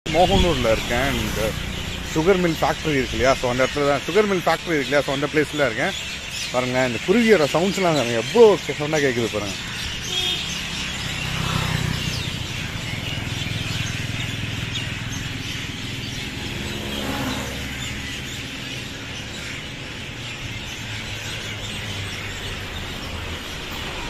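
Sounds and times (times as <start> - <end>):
low traffic rumble: 0.1 - 24.0
small birds chirping: 0.1 - 24.0.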